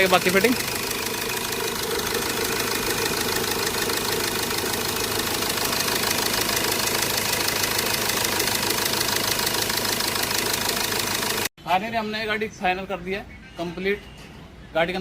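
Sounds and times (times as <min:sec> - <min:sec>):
car engine idling with ticking clatter: 0:00.0 - 0:11.5.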